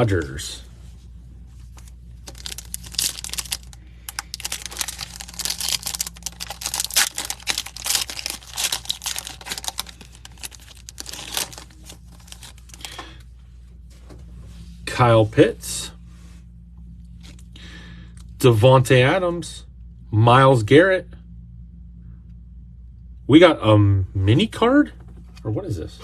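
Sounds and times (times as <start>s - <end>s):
foil wrapper tearing and crinkling: 1.8s - 13.0s.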